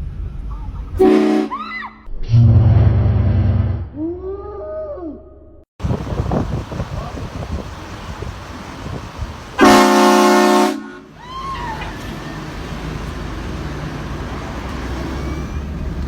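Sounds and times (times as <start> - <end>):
low engine rumble: 0.0 - 1.4, 5.8 - 16.0
train horn blasting: 1.0 - 1.5, 9.6 - 11.1.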